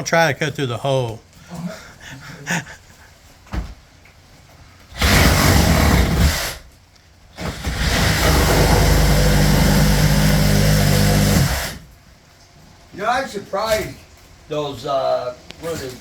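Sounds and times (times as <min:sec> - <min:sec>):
electric power saw cutting: 0:05.0 - 0:06.6, 0:07.4 - 0:11.9.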